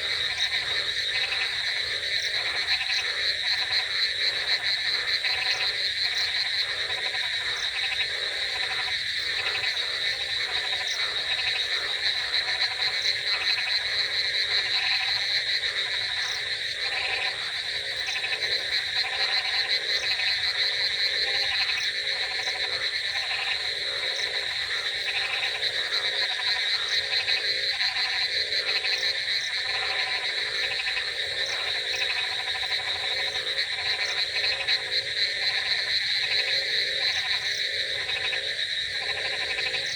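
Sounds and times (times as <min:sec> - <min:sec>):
frog croaks: 0:00.0 - 0:39.9
frogs trilling: 0:00.0 - 0:39.9
low frog calls: 0:00.0 - 0:39.9.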